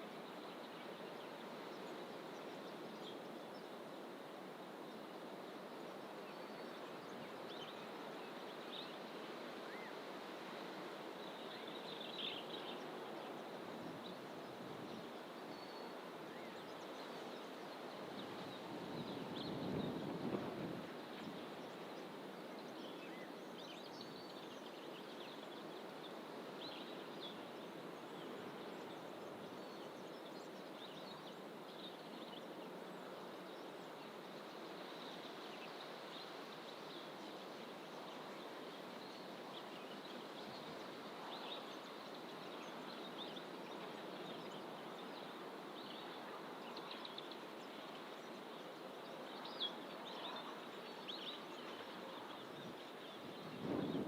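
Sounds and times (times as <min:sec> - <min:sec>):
faint bird chirps: 0:21.2 - 0:54.0.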